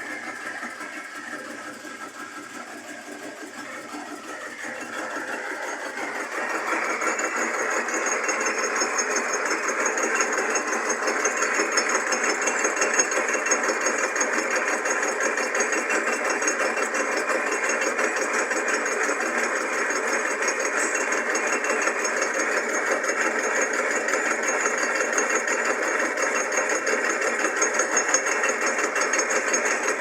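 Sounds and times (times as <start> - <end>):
milling cutter machining metal: 0.0 - 30.0.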